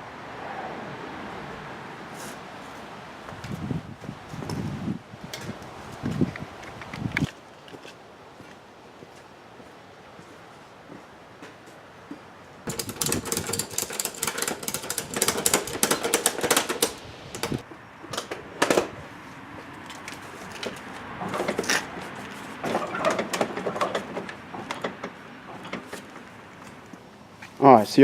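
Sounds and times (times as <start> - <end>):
ratchet strap clicking: 12.7 - 17.6.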